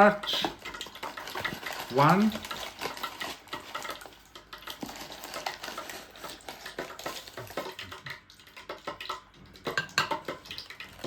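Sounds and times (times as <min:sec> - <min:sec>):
spoon clinking against a bowl: 0:00.0 - 0:11.0.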